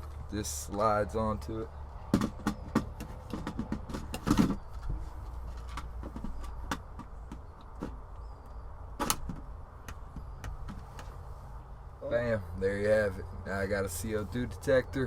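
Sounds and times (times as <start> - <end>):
plastic clicks and knocks: 2.1 - 8.2.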